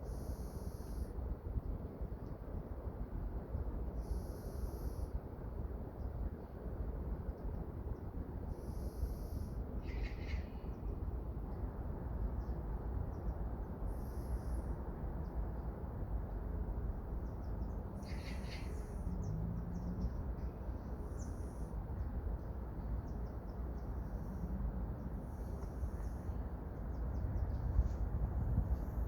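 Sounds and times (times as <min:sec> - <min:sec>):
steady low rumble: 0:09.4 - 0:29.0.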